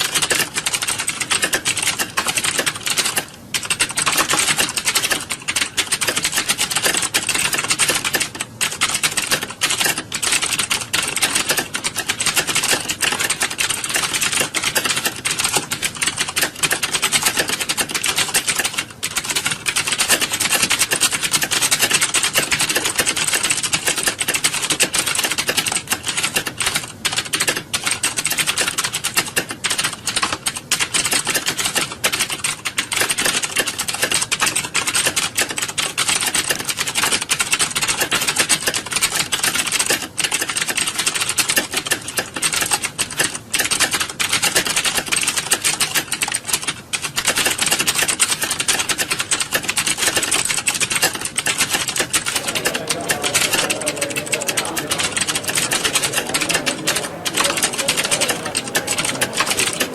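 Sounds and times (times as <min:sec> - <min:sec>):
keyboards typing: 0:00.0 - 0:28.6, 0:51.7 - 0:59.9.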